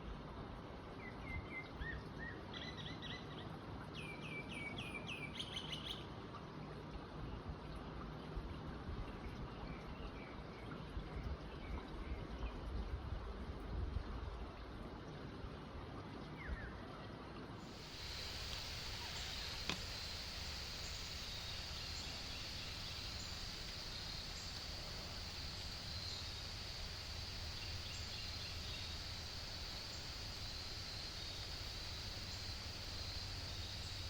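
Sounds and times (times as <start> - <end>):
faint regular ticks: 17.7 - 34.0
low rumbling wash: 17.7 - 34.0
high-pitched hum: 17.8 - 34.0.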